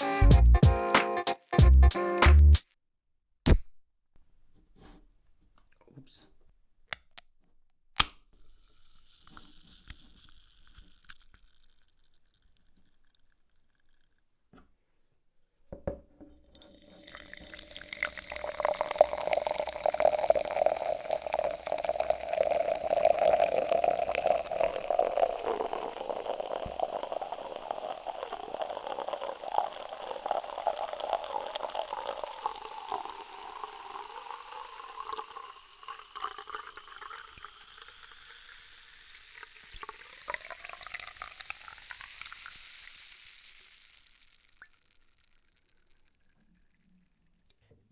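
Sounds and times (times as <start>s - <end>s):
fizzing: 16.4s - 46.2s
soda pouring into a glass: 16.4s - 46.5s.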